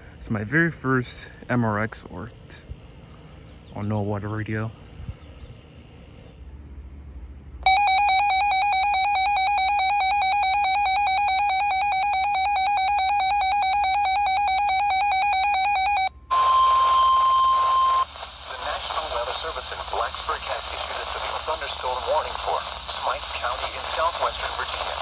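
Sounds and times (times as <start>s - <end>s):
steady warning alarm tone: 7.6s - 18.1s
two-tone buzzy alert signal: 7.7s - 18.0s
radio hiss: 16.4s - 25.0s.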